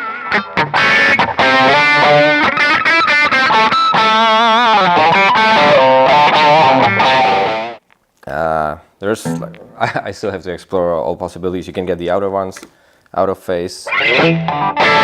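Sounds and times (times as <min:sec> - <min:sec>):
electric guitar single notes: 0:09.2 - 0:10.0.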